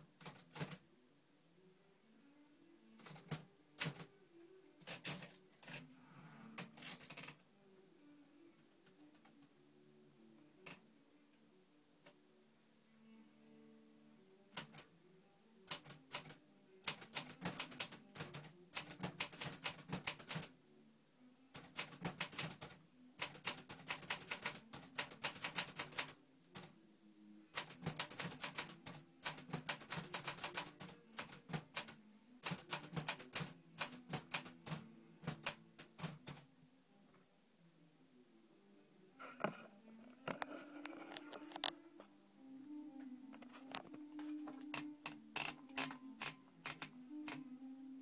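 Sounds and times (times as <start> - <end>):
typewriter keys clicking: 3.0 - 4.0, 4.8 - 5.8, 14.6 - 14.8, 15.7 - 20.5, 21.6 - 26.2, 27.6 - 36.4.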